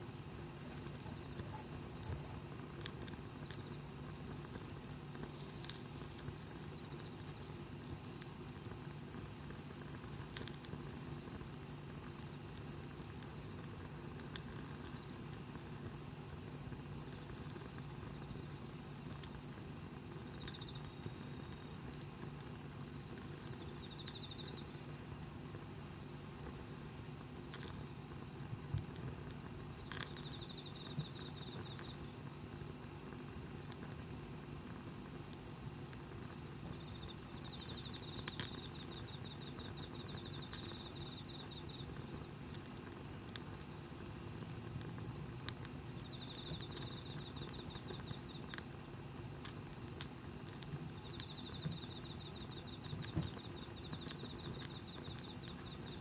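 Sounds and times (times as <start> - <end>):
campfire popping: 0.1 - 56.0
hiss of insects: 11.2 - 13.5.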